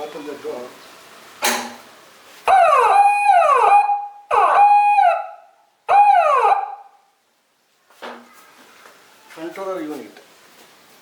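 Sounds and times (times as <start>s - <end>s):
electronic alarm siren wailing: 2.5s - 7.0s.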